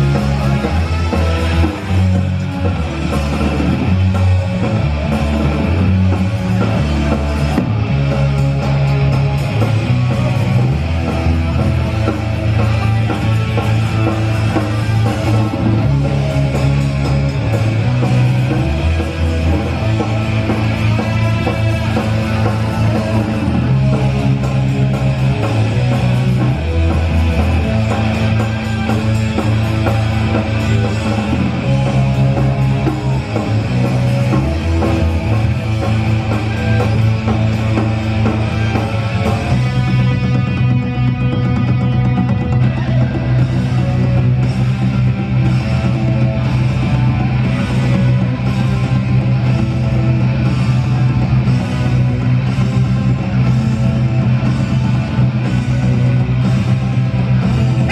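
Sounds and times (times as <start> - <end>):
bass line: 0.0 - 57.9
punk rock band playing live: 0.0 - 57.9.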